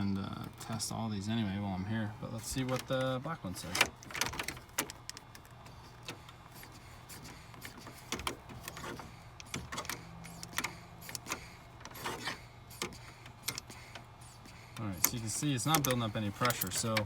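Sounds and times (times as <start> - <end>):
steady low hum: 0.0 - 17.0
hand vacuum pump squeaky clicks: 7.6 - 17.0.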